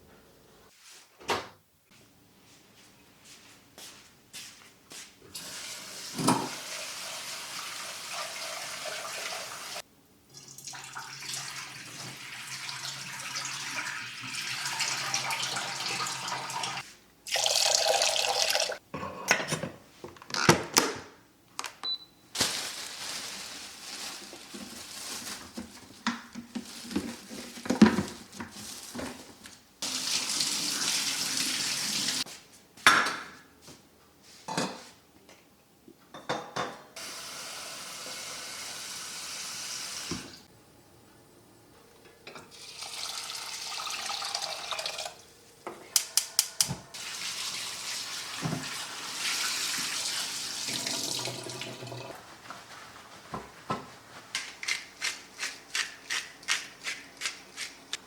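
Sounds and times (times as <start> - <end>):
water running: 5.4 - 18.8, 29.8 - 32.3, 42.5 - 45.3, 46.1 - 53.4.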